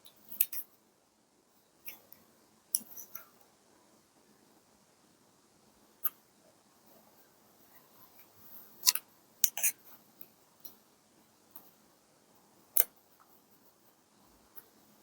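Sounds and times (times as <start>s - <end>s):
quiet paper rustle: 9.8s - 15.0s
sharp clicks and snips: 12.7s - 13.0s.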